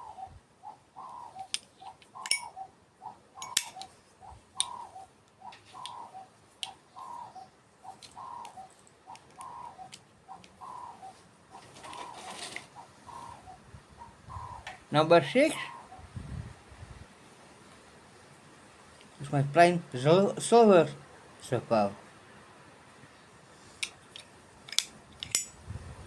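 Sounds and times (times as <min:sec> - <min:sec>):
bird two-part call: 0:00.0 - 0:14.7.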